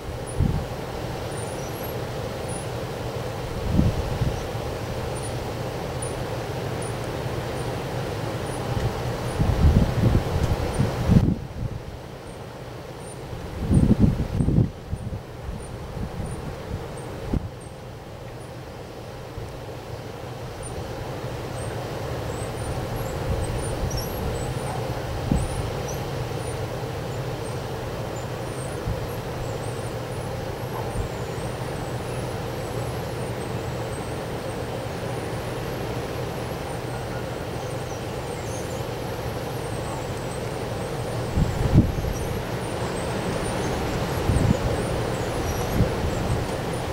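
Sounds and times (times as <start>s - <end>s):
wind blowing: 2.9s - 5.9s, 6.7s - 12.0s, 13.3s - 17.6s, 22.6s - 33.7s, 38.2s - 46.9s
low thumps from wind gusts: 8.7s - 11.8s, 13.4s - 17.6s, 41.0s - 46.9s.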